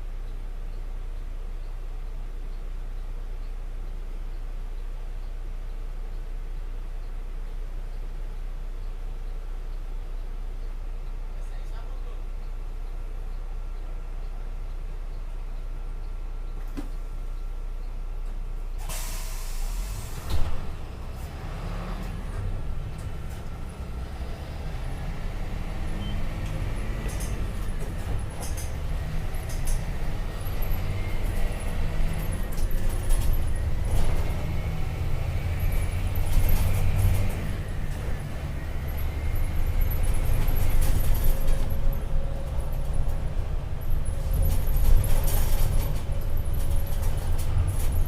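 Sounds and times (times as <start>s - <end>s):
diesel engine running: 12.2s - 48.0s
compressed air hiss: 18.8s - 20.1s.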